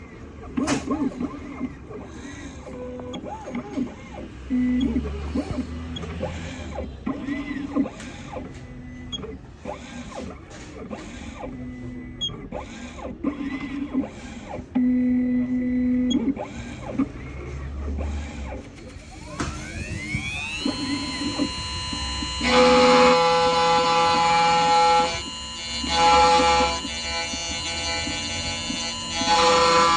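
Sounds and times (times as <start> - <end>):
machine motors whirring: 0.0 - 29.9
motor spinning up with whine: 3.0 - 8.6, 16.4 - 29.9
buzzing multi-pitched tone: 19.0 - 29.9.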